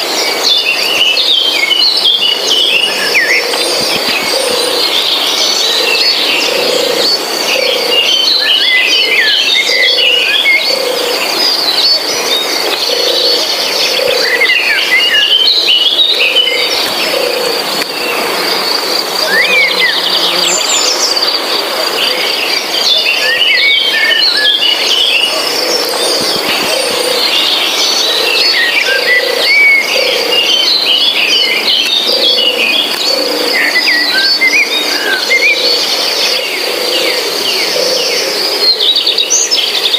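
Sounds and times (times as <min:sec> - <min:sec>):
birds chirping: 0:00.0 - 0:39.9
insects buzzing: 0:00.0 - 0:39.9
low pulsing call: 0:12.6 - 0:38.7.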